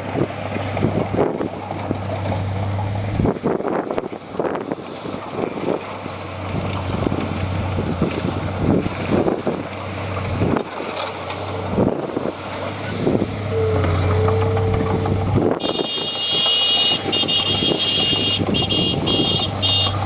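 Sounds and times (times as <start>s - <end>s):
heavy diesel engine running: 0.0s - 20.0s
high-pitched squeal: 12.8s - 18.8s.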